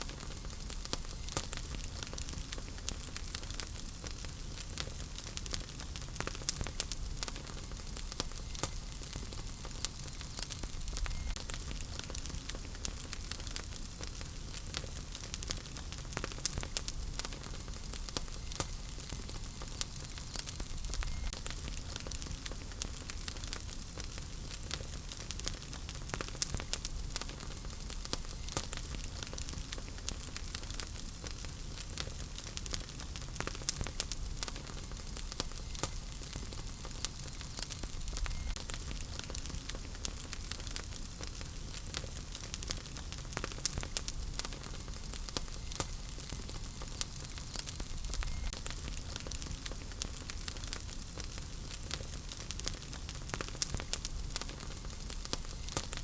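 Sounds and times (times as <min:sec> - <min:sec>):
wood fire crackling and popping: 0:00.0 - 0:56.0.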